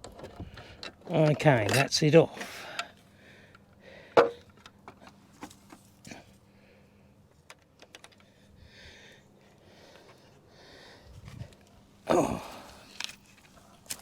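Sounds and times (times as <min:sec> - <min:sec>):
parts clicking and knocking: 0:00.0 - 0:02.0, 0:03.5 - 0:05.8, 0:07.4 - 0:08.3.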